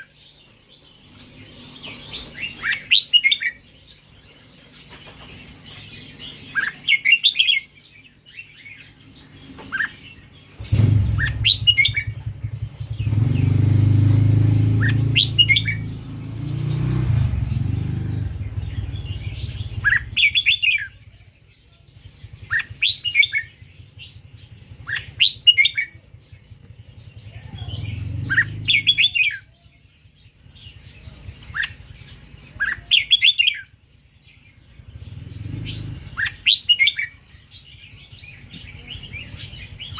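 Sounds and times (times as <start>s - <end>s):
low rumble: 10.6s - 29.1s
bird singing whistled phrases: 10.8s - 12.4s, 14.7s - 16.0s, 18.5s - 21.0s, 32.5s - 33.7s.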